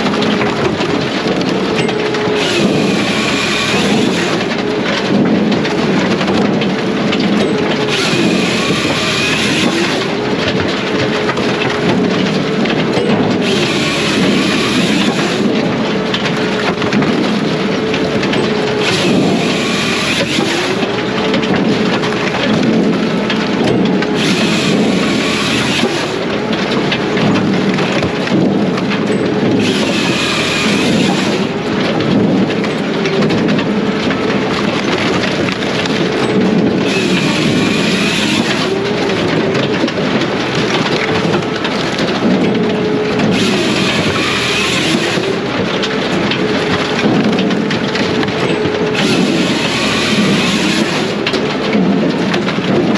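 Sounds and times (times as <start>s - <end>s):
firewood processor engine humming: 0.0s - 52.9s
hissing log cut: 1.4s - 6.2s, 7.5s - 52.4s.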